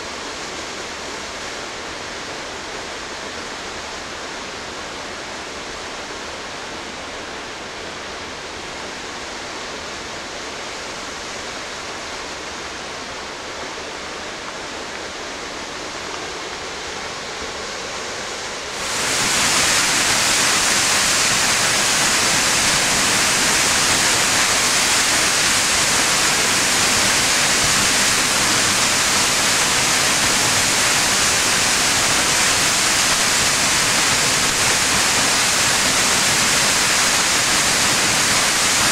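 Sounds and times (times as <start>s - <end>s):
waterfall rushing: 10.4s - 38.9s.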